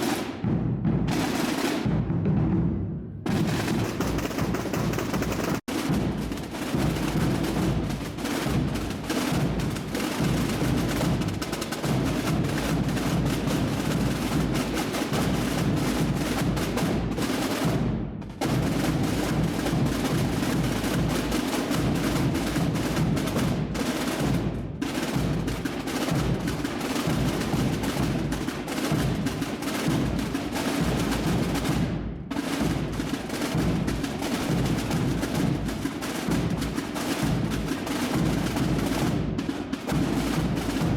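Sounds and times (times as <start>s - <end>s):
massed drums rolling: 1.8s - 6.9s, 40.4s - 40.9s.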